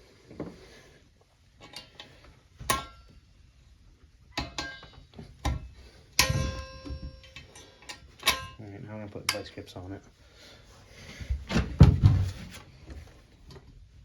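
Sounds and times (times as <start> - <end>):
metal tools clanking: 6.2 - 9.6.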